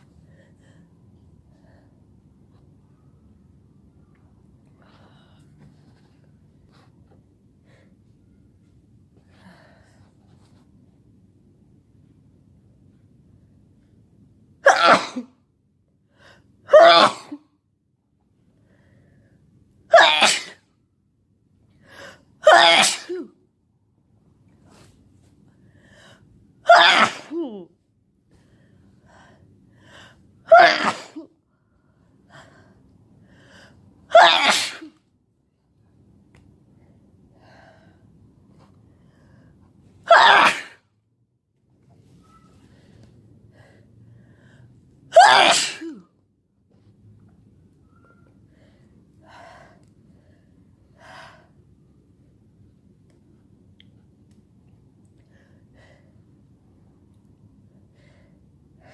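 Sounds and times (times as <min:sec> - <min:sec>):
faint low hum: 0:00.0 - 0:14.7, 0:46.0 - 0:58.9
person sneezing: 0:14.6 - 0:15.3, 0:19.9 - 0:20.6, 0:22.4 - 0:23.4, 0:26.7 - 0:27.6, 0:30.5 - 0:31.3, 0:34.1 - 0:35.0, 0:40.1 - 0:40.8, 0:45.2 - 0:46.1
faint breaths: 0:28.3 - 0:30.3, 0:42.2 - 0:44.9
person breathing hard: 0:42.7 - 0:44.8.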